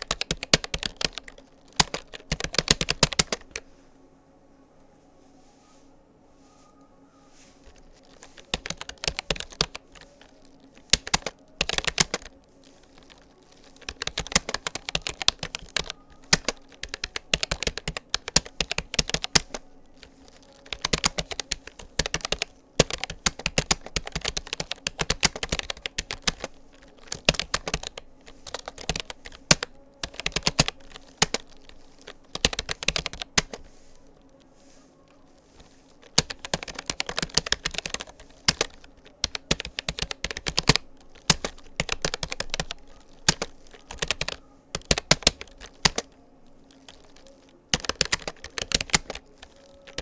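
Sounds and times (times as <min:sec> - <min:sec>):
keyboard key clicks: 0:36.0 - 0:46.1.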